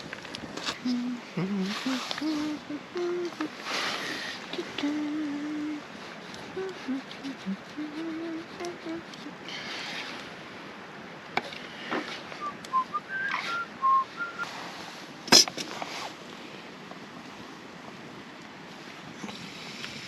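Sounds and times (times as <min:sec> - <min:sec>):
low hum-like tones: 0:00.0 - 0:14.4
short whistled notes: 0:12.4 - 0:14.5.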